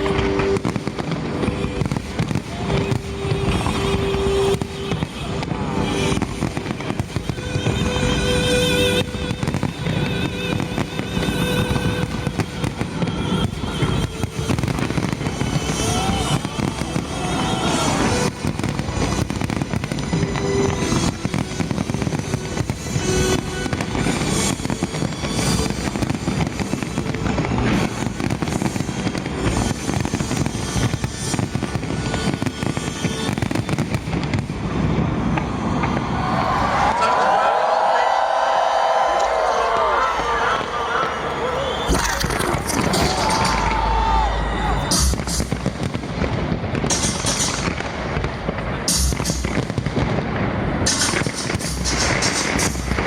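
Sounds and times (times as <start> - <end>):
fireworks bangs and crackles: 0.0 - 53.0.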